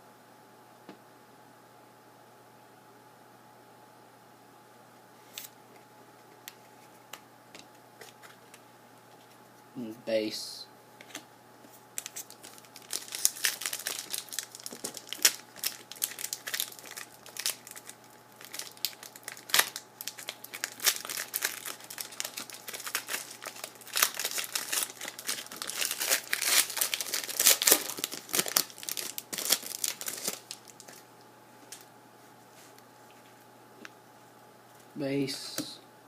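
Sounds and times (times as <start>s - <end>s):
plastic wrapper crinkling and tearing: 11.9s - 31.0s.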